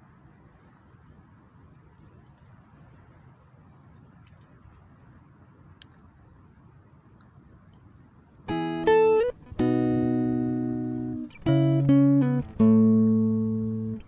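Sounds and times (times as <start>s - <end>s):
faint background noise: 0.0s - 14.0s
plucked guitar music: 8.5s - 14.0s.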